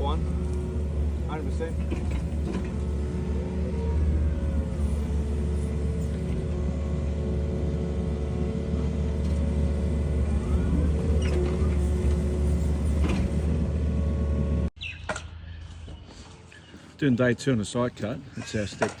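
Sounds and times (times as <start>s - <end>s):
engine running with low hum: 0.0s - 14.8s.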